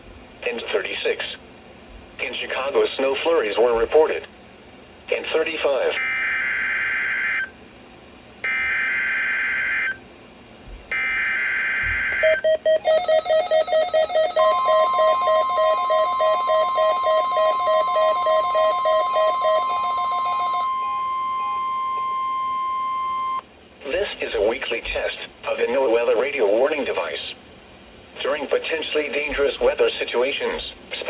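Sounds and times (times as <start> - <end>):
steady warning alarm tone: 6.0 - 7.6, 8.4 - 10.0, 10.9 - 23.4
fast pulsing beep: 12.2 - 23.4
raspy digital data bursts: 12.8 - 20.7.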